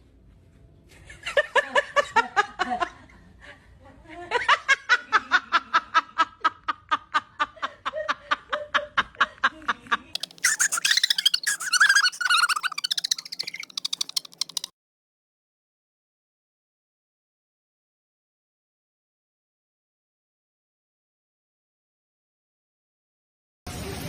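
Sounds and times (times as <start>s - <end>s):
person laughing: 10.2s - 14.7s.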